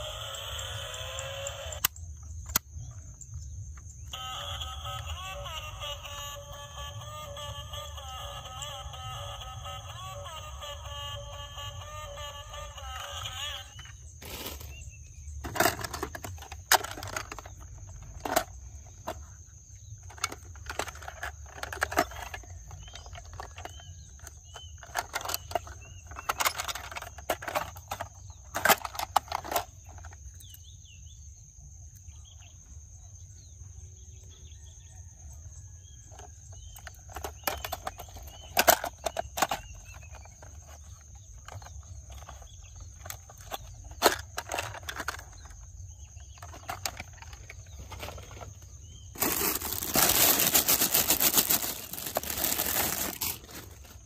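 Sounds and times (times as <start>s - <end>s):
faint bird chirps: 29.8s - 50.3s.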